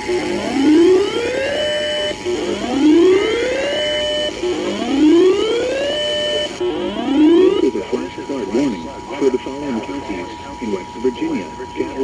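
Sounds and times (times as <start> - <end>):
whooping siren alert tone: 0.1 - 7.6.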